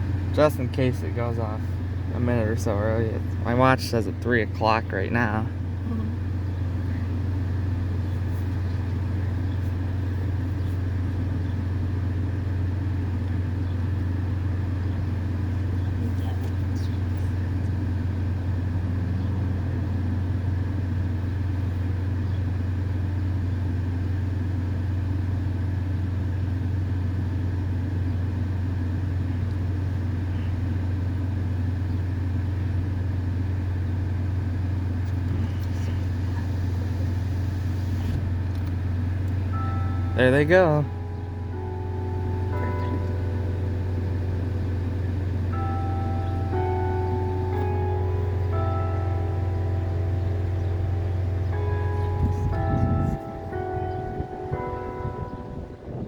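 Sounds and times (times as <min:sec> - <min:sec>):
car engine idling: 0:00.0 - 0:56.0.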